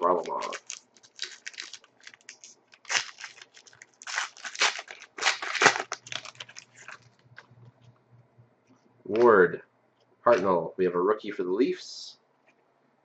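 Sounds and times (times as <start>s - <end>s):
card pack wrapper crinkling: 0.0s - 7.5s.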